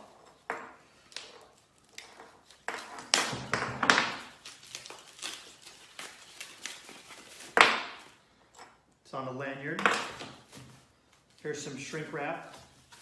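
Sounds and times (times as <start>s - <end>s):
plastic wrap rustling: 0.9s - 8.2s, 10.0s - 13.0s.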